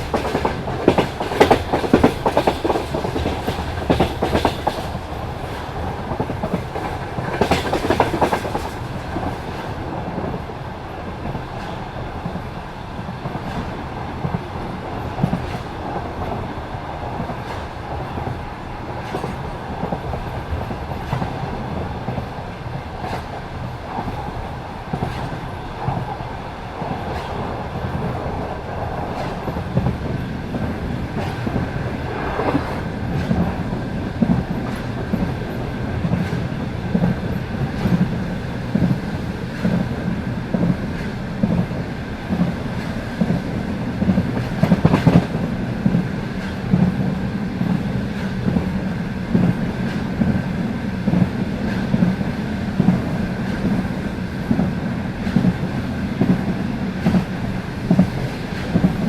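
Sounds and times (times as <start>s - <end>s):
train wheels knocking over rail joints: 0.0s - 9.4s
train rolling rumble: 0.0s - 59.0s.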